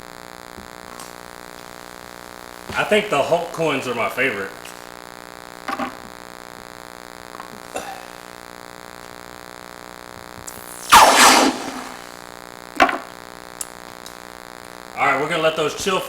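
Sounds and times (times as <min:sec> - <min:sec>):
electrical hum and hiss: 0:00.0 - 0:16.0
short loud noise burst: 0:10.8 - 0:12.2.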